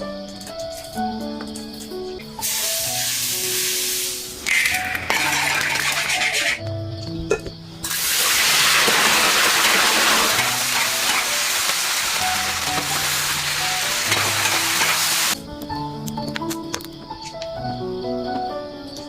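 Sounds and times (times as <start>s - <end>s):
food sizzling in hot oil: 2.4s - 6.6s, 7.8s - 15.4s.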